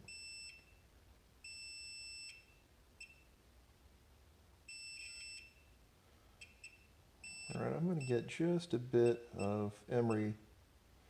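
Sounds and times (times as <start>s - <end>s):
multimeter high-pitched beep: 0.1s - 0.8s, 1.4s - 3.4s, 4.7s - 5.8s, 6.4s - 8.3s, 9.0s - 10.4s.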